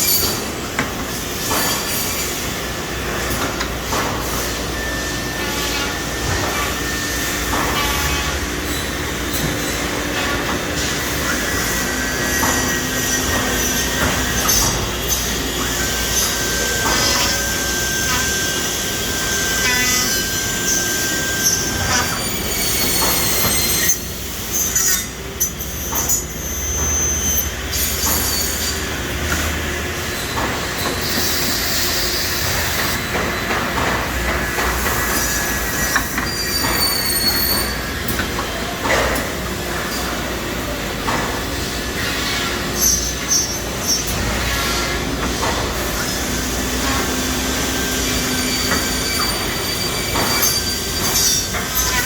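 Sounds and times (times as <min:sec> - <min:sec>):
steady machine noise: 0:00.0 - 0:24.5, 0:25.1 - 0:52.0
short high squeals: 0:36.2 - 0:38.0, 0:47.2 - 0:52.0.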